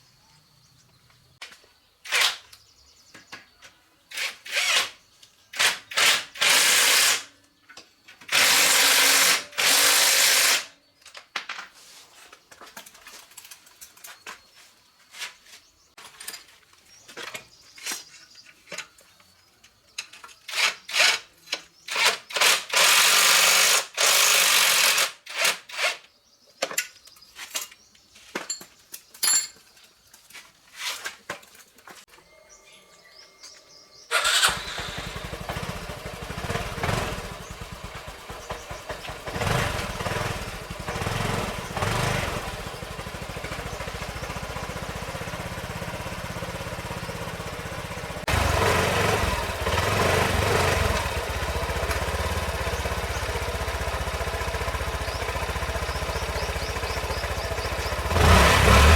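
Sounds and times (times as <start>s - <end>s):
motorcycle engine running: 34.1s - 58.9s.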